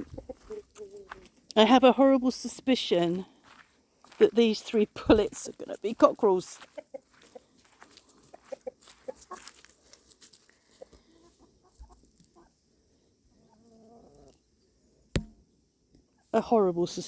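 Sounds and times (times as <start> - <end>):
chickens clucking: 0.0 - 1.4, 6.6 - 9.6, 10.7 - 12.6, 13.3 - 14.4.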